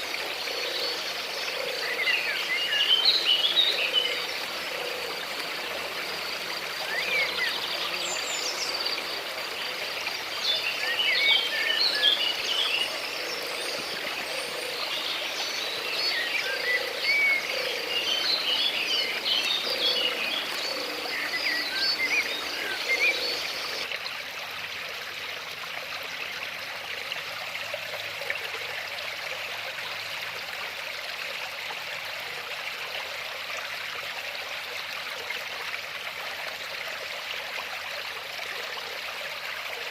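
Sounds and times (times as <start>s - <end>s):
stream water running: 0.0s - 39.9s
birds chirping: 9.9s - 23.9s.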